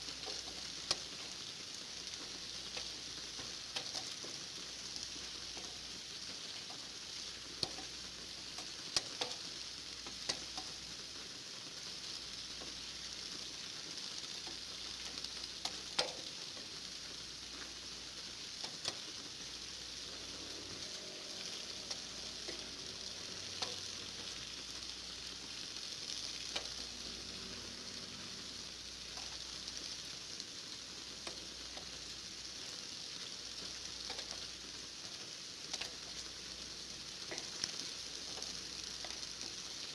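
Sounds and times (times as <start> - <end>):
steady rain hiss: 0.0 - 39.9
raindrop tapping close by: 7.6 - 7.9, 8.5 - 9.4, 14.4 - 16.7, 20.6 - 24.8, 33.6 - 34.5, 35.1 - 36.3, 37.2 - 39.9.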